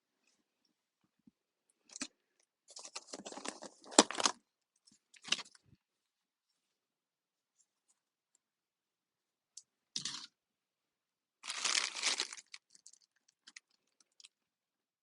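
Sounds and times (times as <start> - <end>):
packaging crinkling and tearing: 2.7 - 4.4, 11.4 - 14.3.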